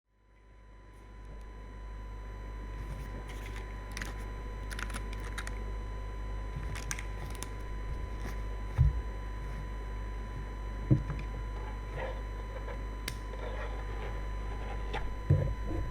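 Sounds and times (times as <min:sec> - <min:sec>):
mechanical keyboard keystrokes: 0:03.4 - 0:05.6.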